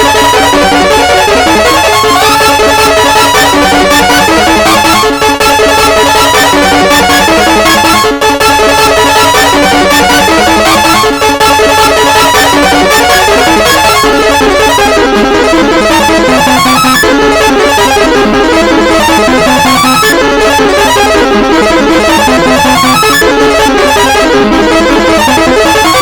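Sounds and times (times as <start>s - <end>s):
buzzy alarm tone melody: 0.0s - 26.0s.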